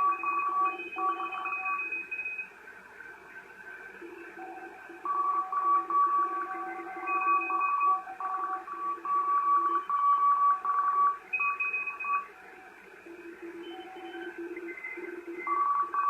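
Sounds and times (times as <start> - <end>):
morse code beeping: 0.0 - 2.4, 4.5 - 12.3, 15.4 - 16.0
radio band hiss: 0.0 - 16.0.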